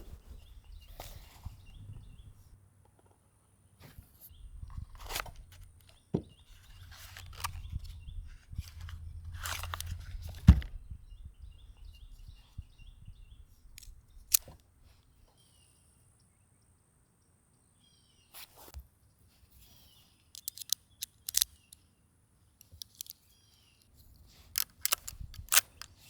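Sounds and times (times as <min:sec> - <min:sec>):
rustling crunching scrapes: 0:06.5 - 0:10.5
rifle metallic clicks: 0:13.8 - 0:14.6, 0:20.4 - 0:21.8, 0:22.6 - 0:23.2, 0:24.6 - 0:26.0.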